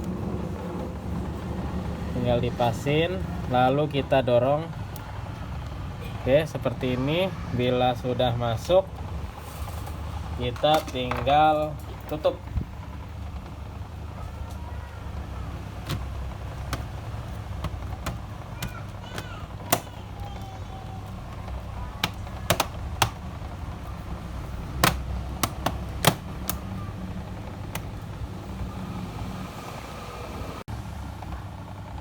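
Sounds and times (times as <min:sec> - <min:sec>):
plastic clicks and snaps: 0:21.4 - 0:23.3, 0:24.8 - 0:26.7.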